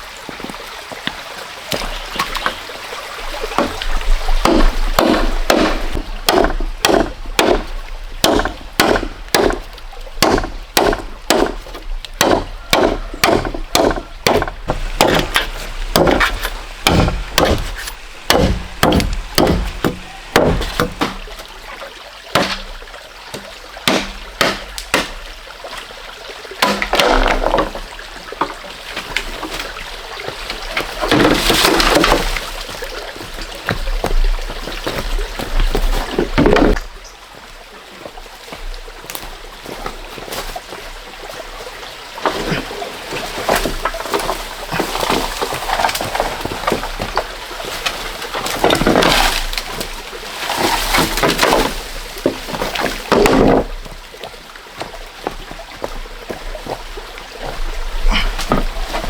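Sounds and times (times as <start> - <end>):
blade chopping bamboo: 4.4 - 21.3, 22.3 - 22.7, 23.4 - 25.3, 26.6 - 27.8, 30.9 - 32.4, 47.8 - 49.8, 50.4 - 53.8.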